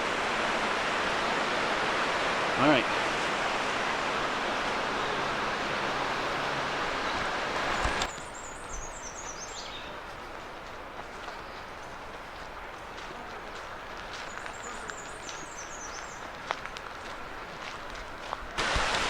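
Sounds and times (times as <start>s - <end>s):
river water rushing: 0.0s - 8.6s, 18.6s - 19.0s
bird singing: 6.6s - 10.0s, 14.3s - 16.2s.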